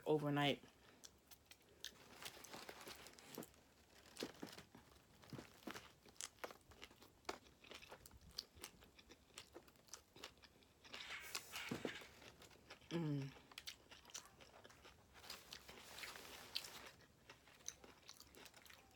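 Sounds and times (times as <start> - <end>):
chewing crunches: 0.7 - 18.9.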